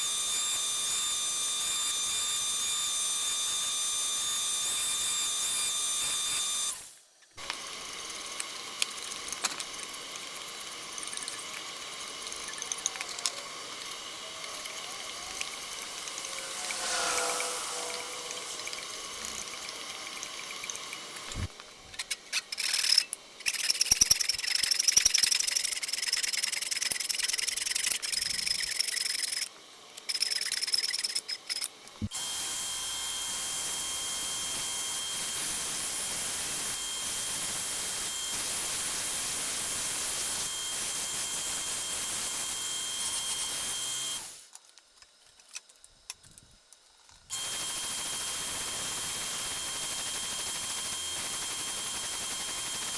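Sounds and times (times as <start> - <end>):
power tool motor whine: 0.0 - 22.0, 30.2 - 44.5, 47.3 - 52.9
grinding or sanding: 14.4 - 20.0.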